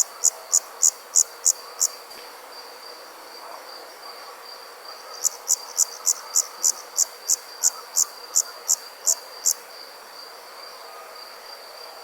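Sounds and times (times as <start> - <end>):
insect high trill: 0.0 - 2.0
insect chirps: 0.0 - 12.0.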